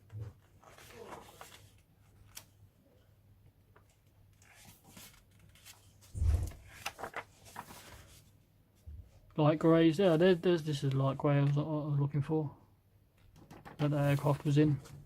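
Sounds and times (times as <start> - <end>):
paper rustle of pages: 0.0 - 2.6, 3.7 - 8.3, 13.4 - 15.0
low thump: 6.2 - 6.7.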